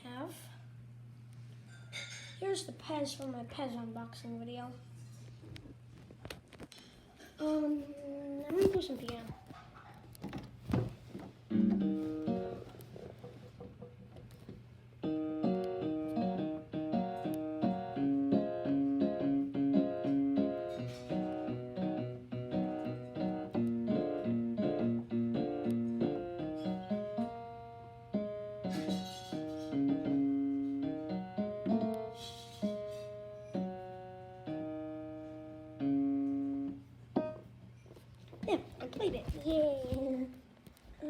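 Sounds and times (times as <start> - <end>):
piano playing simple tune: 11.5 - 12.8, 15.0 - 37.6.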